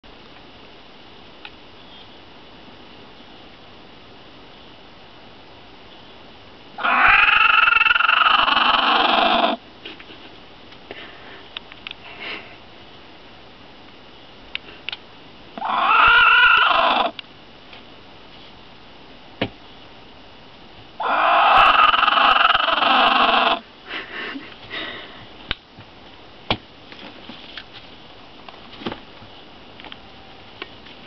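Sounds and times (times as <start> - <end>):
hen harsh drawn-out call: 6.8 - 9.6, 15.6 - 17.2, 21.0 - 23.6.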